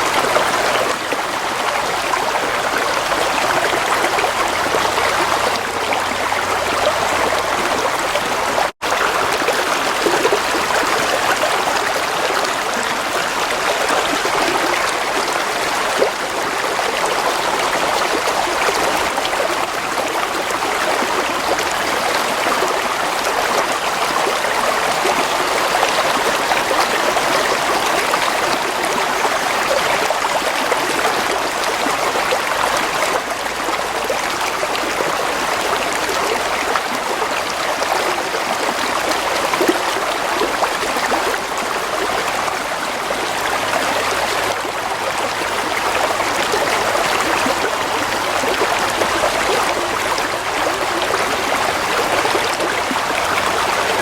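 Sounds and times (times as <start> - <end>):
stream water flowing: 0.0 - 54.0.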